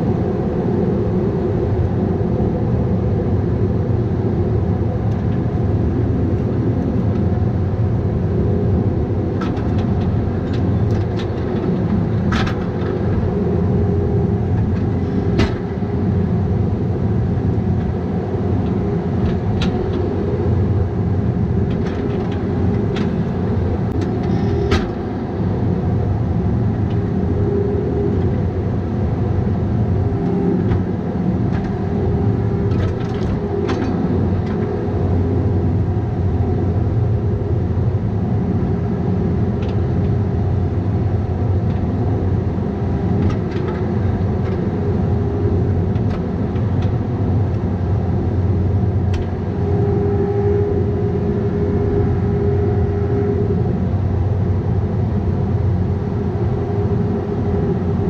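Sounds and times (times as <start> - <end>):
excavator diesel engine running: 9.1 - 38.0
high hydraulic whine: 21.9 - 25.5.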